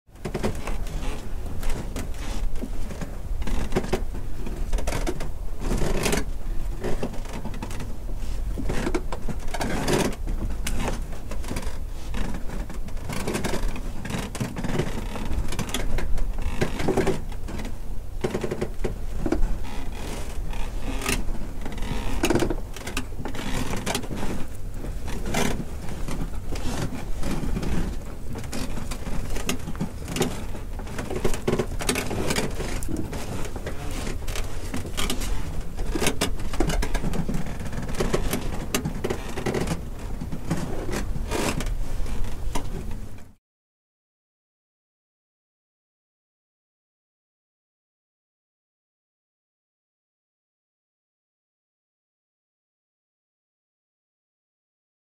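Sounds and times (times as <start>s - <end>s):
wooden timbers creaking: 0.2s - 43.4s.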